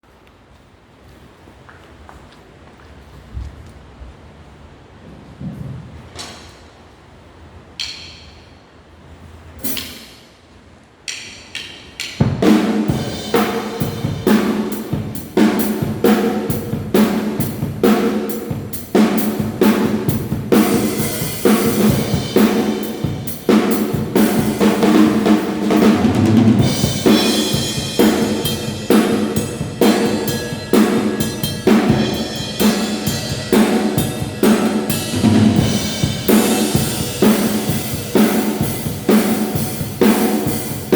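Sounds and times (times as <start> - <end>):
drum kit playing: 12.0 - 40.9.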